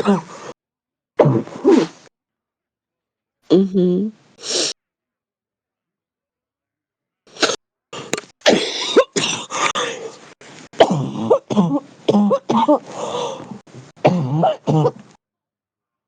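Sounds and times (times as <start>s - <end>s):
harsh chesty coughing: 7.3s - 15.2s.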